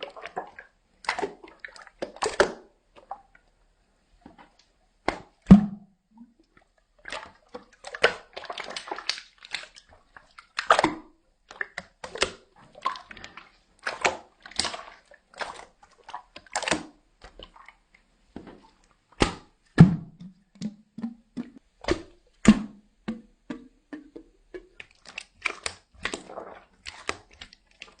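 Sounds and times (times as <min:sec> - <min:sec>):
slime squelching: 0:07.0 - 0:28.0.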